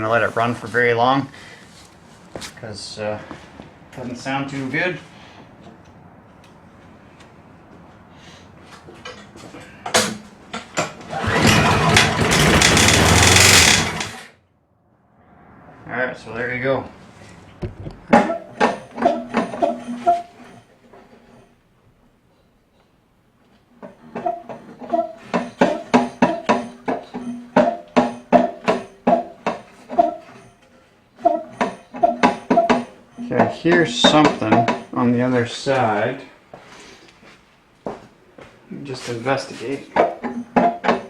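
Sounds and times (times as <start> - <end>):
metal-on-metal grinding: 10.8 - 14.3, 23.8 - 34.9
lawn mower engine running: 11.0 - 14.3
sharp knocks: 17.6 - 19.4.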